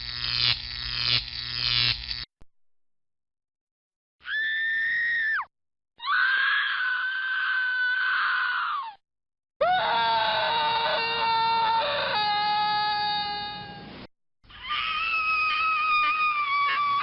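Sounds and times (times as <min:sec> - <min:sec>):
high screams: 0:04.2 - 0:09.0, 0:09.6 - 0:13.8, 0:14.5 - 0:17.0
low wavering cry: 0:09.6 - 0:13.9.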